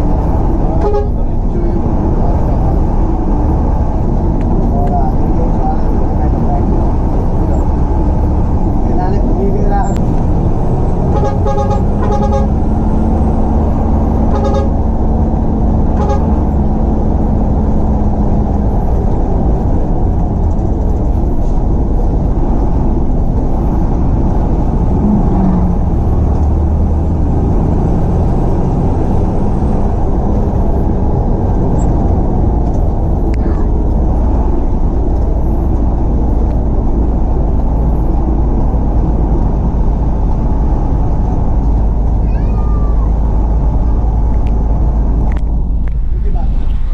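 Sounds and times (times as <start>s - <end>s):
low rumble of engines: 0.0s - 46.9s
bus horn blasts: 0.7s - 1.3s, 11.0s - 12.7s, 14.2s - 14.9s, 15.9s - 16.4s.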